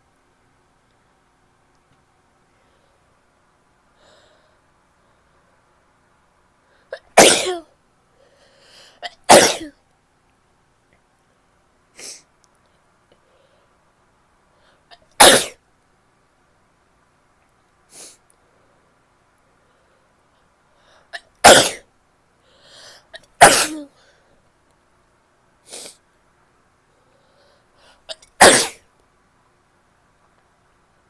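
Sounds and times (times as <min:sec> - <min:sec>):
woman sneezing: 0:07.0 - 0:07.7, 0:09.3 - 0:09.7, 0:15.2 - 0:15.6, 0:21.4 - 0:21.8, 0:23.4 - 0:23.9, 0:28.4 - 0:28.8.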